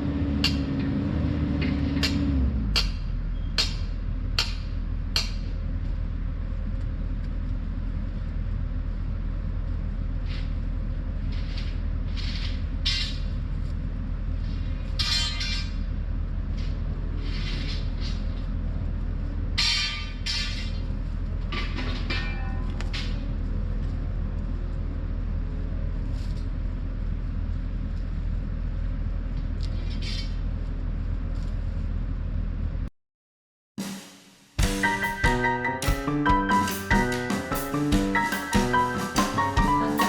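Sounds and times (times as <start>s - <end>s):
heavy equipment diesel engine: 0.0s - 6.3s
metallic rattles and scrapes: 14.4s - 15.9s, 16.5s - 18.8s.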